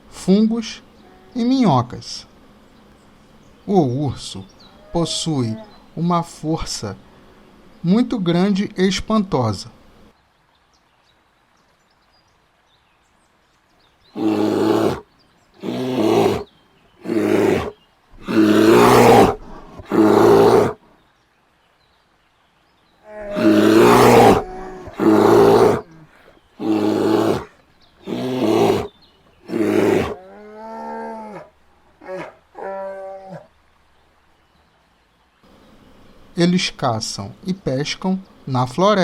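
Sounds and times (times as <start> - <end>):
bear roaring: 14.1 - 20.8, 23.0 - 33.5.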